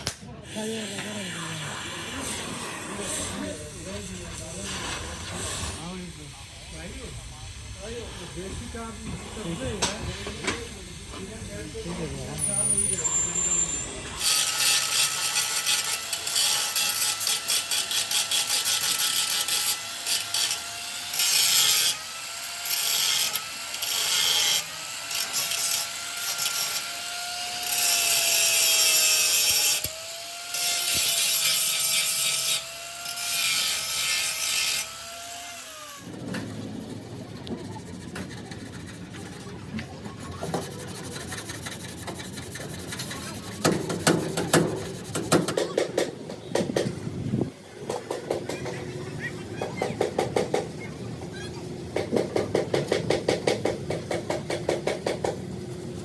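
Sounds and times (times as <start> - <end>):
harsh rasping of abrading: 0.5 - 21.9, 22.8 - 56.0
clicks and knocks of hand work: 41.4 - 47.0.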